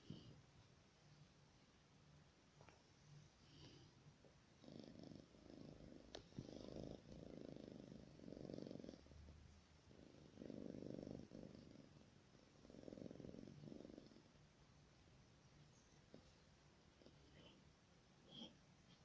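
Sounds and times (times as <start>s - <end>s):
cat snoring softly: 0.0s - 0.4s, 3.4s - 4.0s, 4.6s - 14.5s, 16.0s - 19.0s.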